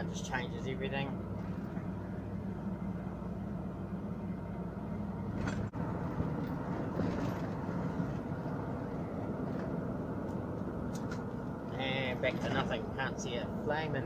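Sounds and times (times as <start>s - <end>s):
engine and road noise in cab: 0.0s - 14.0s.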